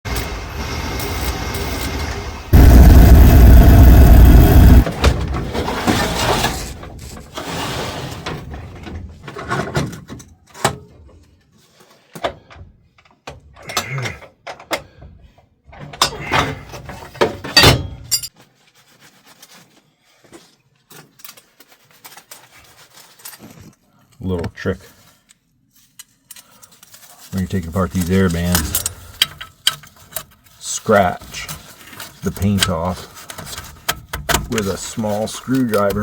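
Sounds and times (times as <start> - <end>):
steady rushing noise: 2.5 - 4.9
metal parts and tools clunking: 12.1 - 18.4, 25.9 - 36.0.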